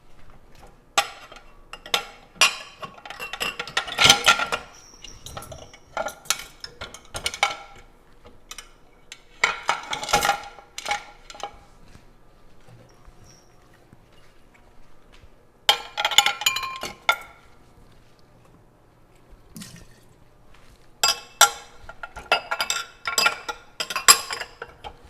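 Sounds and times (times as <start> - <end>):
glasses and dishes clinking: 1.0 - 7.8, 15.7 - 17.4, 21.0 - 25.0.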